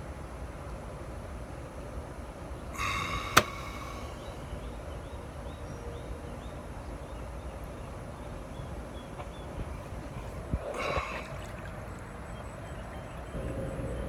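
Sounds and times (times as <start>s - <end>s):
faint bird chirps: 2.8s - 14.0s.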